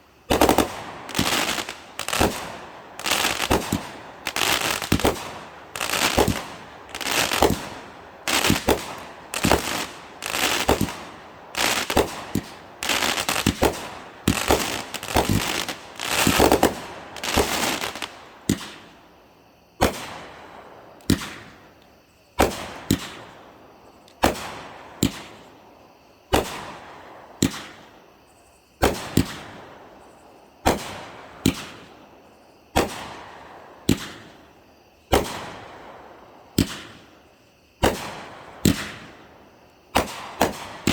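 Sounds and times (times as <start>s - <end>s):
fireworks crackling: 0.0s - 19.0s, 37.8s - 40.9s
fireworks bangs: 0.3s - 19.0s, 19.8s - 21.6s, 35.1s - 37.1s, 37.8s - 39.3s, 39.9s - 40.9s.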